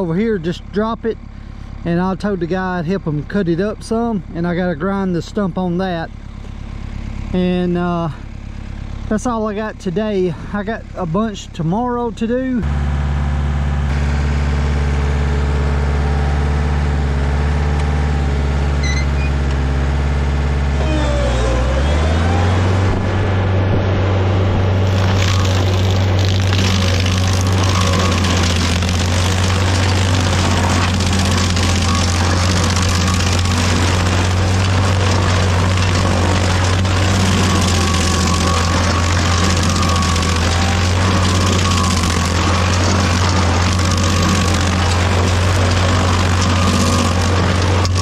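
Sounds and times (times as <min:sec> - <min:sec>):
engine idling: 0:00.0 - 0:48.0
high chirp: 0:18.8 - 0:19.4.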